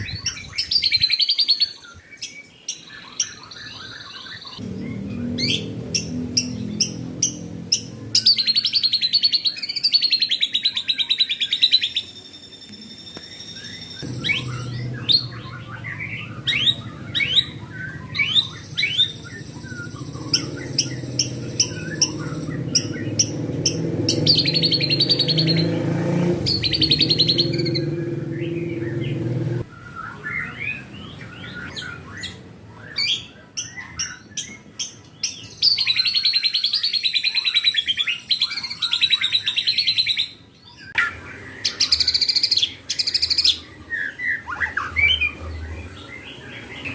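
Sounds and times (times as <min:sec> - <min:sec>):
songbird singing: 0:00.0 - 0:46.9
low steady hum: 0:12.7 - 0:23.6.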